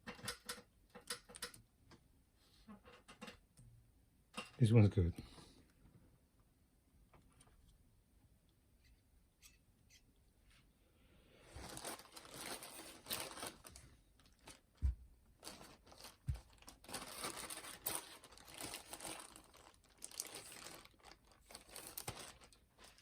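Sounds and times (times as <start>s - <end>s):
hands rustling and scraping parts: 11.5s - 14.7s, 15.4s - 23.0s.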